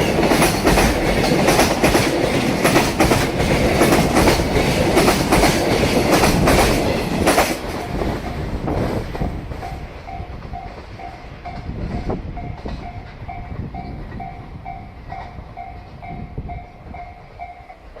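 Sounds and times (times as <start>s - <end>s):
train wheels clacking over rail joints: 0.0s - 14.3s
level-crossing warning bell: 9.6s - 18.0s.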